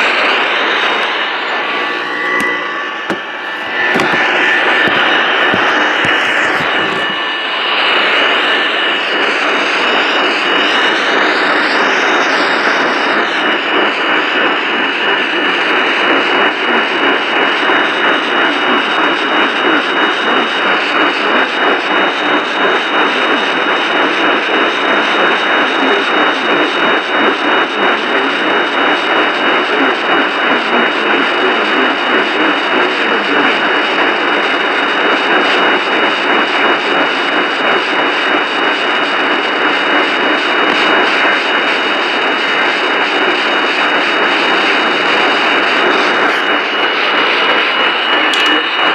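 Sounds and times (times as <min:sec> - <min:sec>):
radio static hiss: 0:00.0 - 0:17.1, 0:29.5 - 0:48.9.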